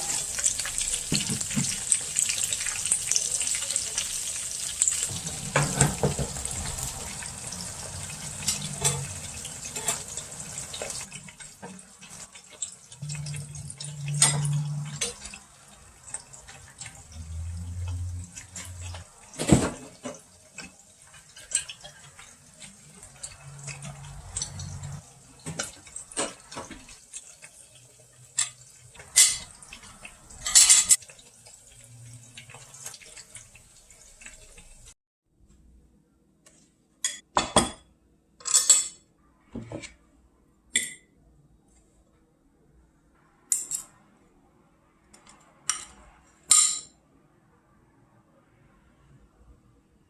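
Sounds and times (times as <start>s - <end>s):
dishes and utensils clattering: 0.0s - 4.2s, 4.8s - 31.6s, 38.4s - 40.0s, 45.2s - 47.0s
water running: 0.0s - 35.0s.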